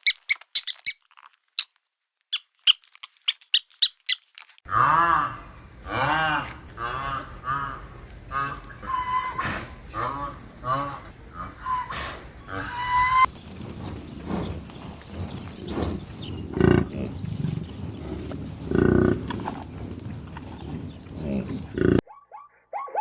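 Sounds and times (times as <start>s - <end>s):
high-pitched animal calls: 0.0s - 1.1s, 12.5s - 23.0s
loud low animal calls: 4.7s - 22.0s
grunting calls: 12.5s - 22.0s.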